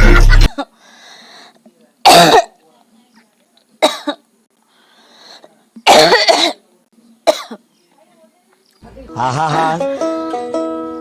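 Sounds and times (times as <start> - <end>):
woman coughing: 0.4 - 0.7, 2.0 - 2.5, 3.8 - 4.2, 5.8 - 6.6, 7.2 - 7.6.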